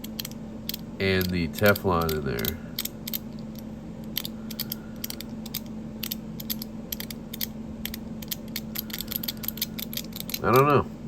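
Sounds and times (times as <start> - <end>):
metal fidget slider clicking: 4.2 - 10.5.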